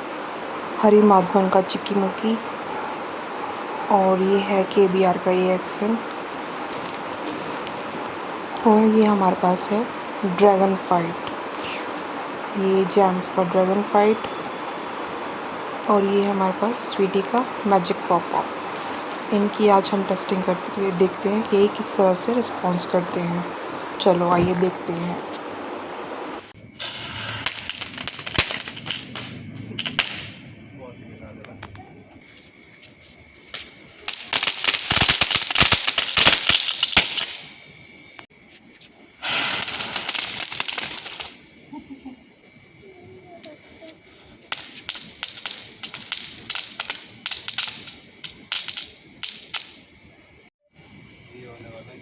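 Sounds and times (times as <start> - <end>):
firecracker hissing burn: 0.0 - 51.3
firecracker crackling pops: 4.3 - 30.6, 31.3 - 38.3, 39.2 - 41.5, 43.4 - 50.0.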